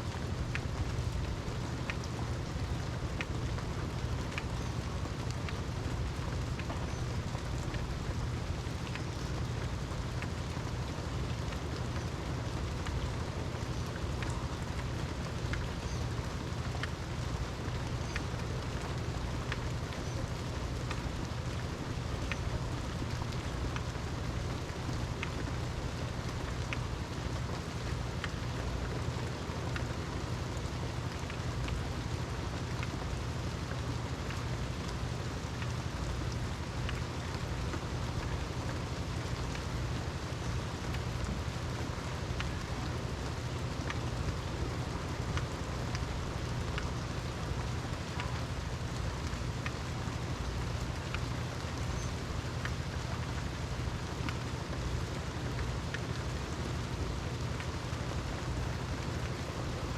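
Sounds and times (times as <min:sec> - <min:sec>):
constant low rumble: 0:00.0 - 0:59.9
steady rain falling: 0:00.0 - 0:59.9.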